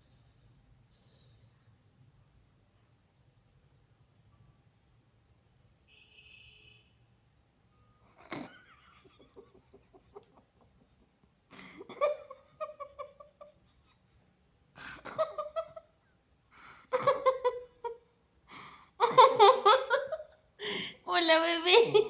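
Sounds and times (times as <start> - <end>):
woman giggling softly: 8.1 - 14.2
faint breathing: 16.5 - 16.9, 18.5 - 19.0, 20.6 - 21.1.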